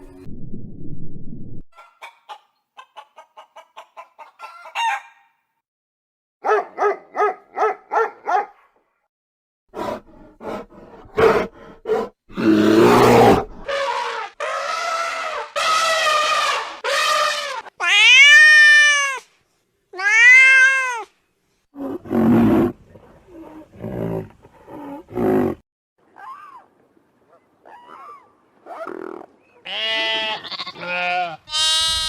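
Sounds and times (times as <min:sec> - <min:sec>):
chickens clucking: 0:01.8 - 0:05.0.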